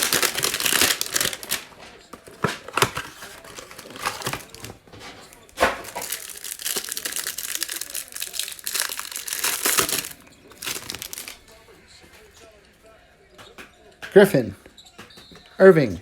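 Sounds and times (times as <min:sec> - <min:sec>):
plastic wrapper tearing and crinkling: 0:00.0 - 0:11.4.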